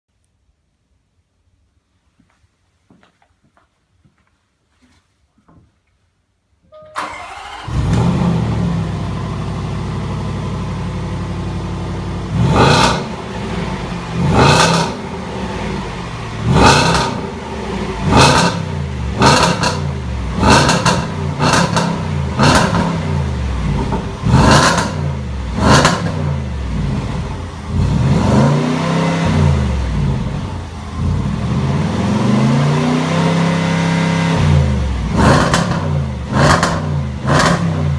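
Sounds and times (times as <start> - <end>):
car engine starting: 7.0 - 37.9
car engine revving: 7.1 - 37.9.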